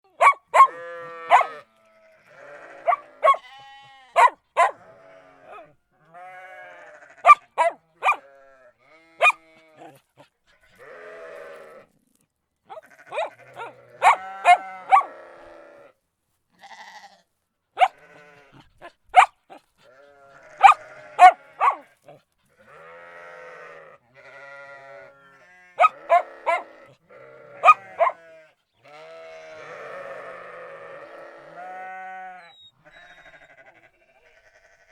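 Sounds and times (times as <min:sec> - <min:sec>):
dog barking: 0:00.1 - 0:01.6, 0:02.7 - 0:03.5, 0:04.2 - 0:04.9, 0:05.5 - 0:05.7, 0:07.2 - 0:08.3, 0:09.2 - 0:10.0, 0:12.7 - 0:15.2, 0:17.8 - 0:18.0, 0:18.8 - 0:19.6, 0:20.4 - 0:22.2, 0:25.8 - 0:26.9, 0:27.5 - 0:28.3
sheep bleating: 0:00.2 - 0:12.0, 0:12.7 - 0:15.9, 0:16.6 - 0:34.9.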